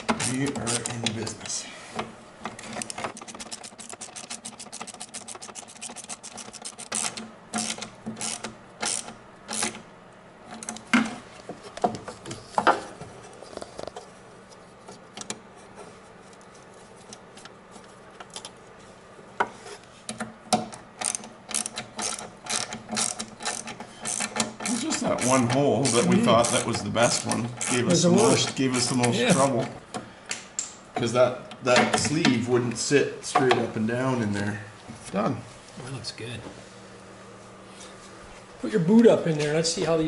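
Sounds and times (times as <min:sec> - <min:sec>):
ratchet wrench clicking: 0:03.2 - 0:09.8, 0:21.0 - 0:27.8.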